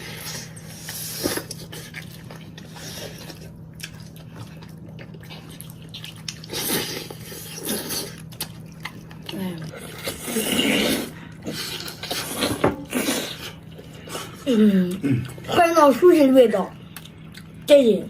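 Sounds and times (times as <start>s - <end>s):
steady low hum: 0.0s - 18.0s
wet chewing and biting: 0.9s - 14.3s.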